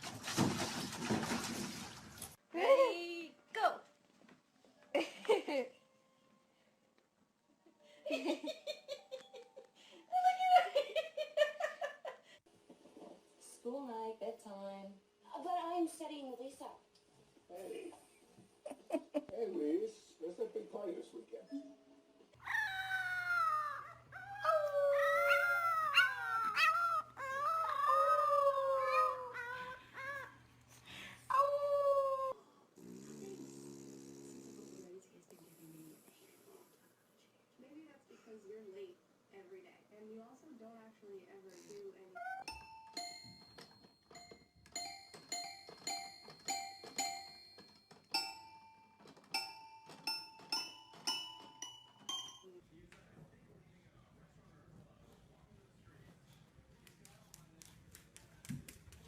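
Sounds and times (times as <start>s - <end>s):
dog howling: 22.4s - 30.4s.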